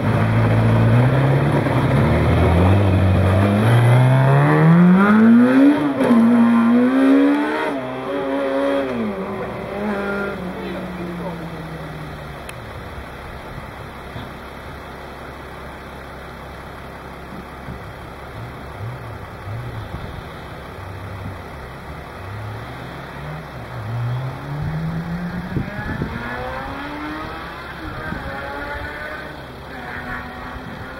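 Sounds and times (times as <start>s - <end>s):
motorcycle engine revving: 0.0s - 11.8s, 18.2s - 30.9s.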